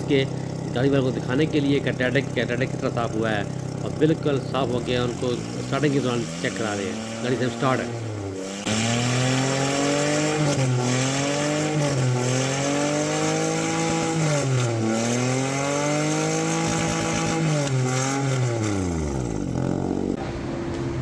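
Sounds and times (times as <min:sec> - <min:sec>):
car engine revving: 0:00.0 - 0:21.0.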